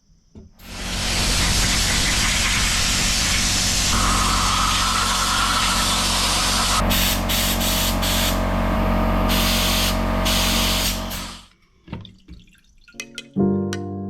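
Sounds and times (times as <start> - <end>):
loud hissing spray: 0.6 - 11.5
motor hum: 0.6 - 11.5
music with plucked notes: 13.0 - 14.0.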